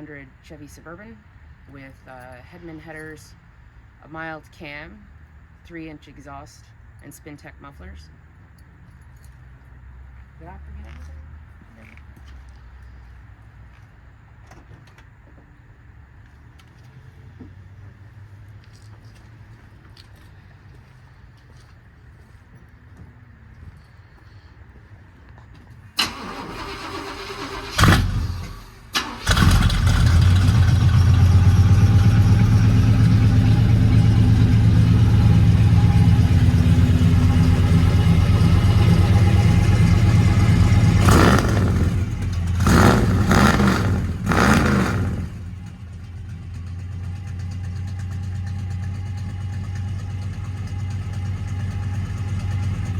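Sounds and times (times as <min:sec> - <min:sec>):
engine revving: 0:26.0 - 0:45.8
engine cranking and idling: 0:26.0 - 0:52.9.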